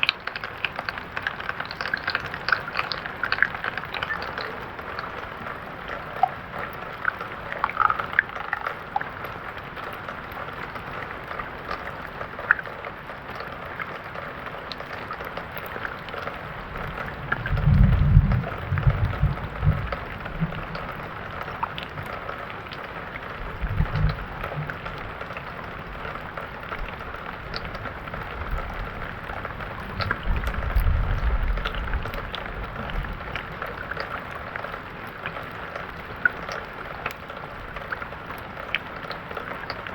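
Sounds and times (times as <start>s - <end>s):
raindrop ticks: 0.0s - 39.9s
steady rain: 0.0s - 39.9s
low rumbles: 16.5s - 21.2s.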